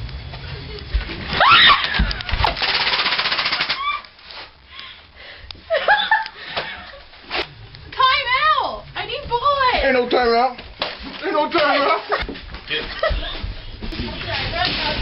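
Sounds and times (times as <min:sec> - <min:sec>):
toy blaster rattling shots: 0:02.4 - 0:04.0.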